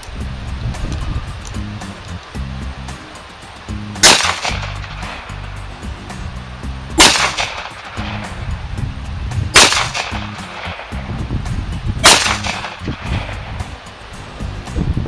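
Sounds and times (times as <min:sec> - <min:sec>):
funk background music: 0:00.0 - 0:15.0
pistol shots: 0:04.0 - 0:05.3, 0:07.0 - 0:08.3, 0:09.6 - 0:10.9, 0:12.0 - 0:13.5.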